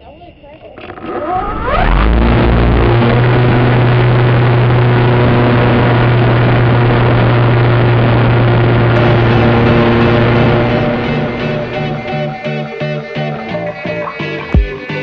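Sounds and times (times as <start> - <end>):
air rushing: 9.0 - 13.6.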